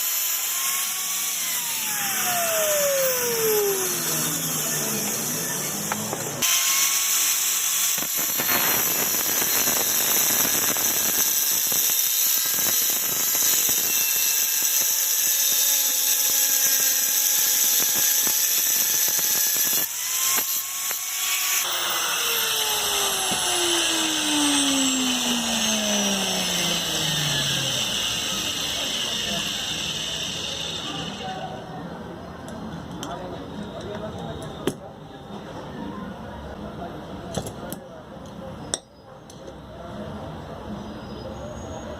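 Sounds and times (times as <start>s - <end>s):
power tool grinding: 0.0s - 31.6s
motor spinning down whine: 0.9s - 6.5s, 21.6s - 31.4s.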